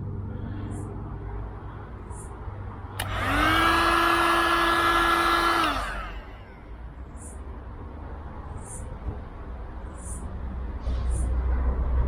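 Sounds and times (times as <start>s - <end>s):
heat gun switch click: 3.0s - 6.1s
heat gun fan whine: 3.0s - 6.8s.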